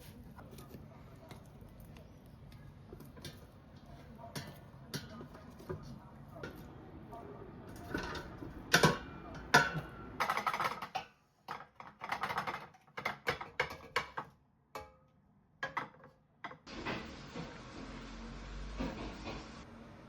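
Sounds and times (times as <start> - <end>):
utensils and dishes rattling: 3.0 - 6.7, 7.7 - 14.2.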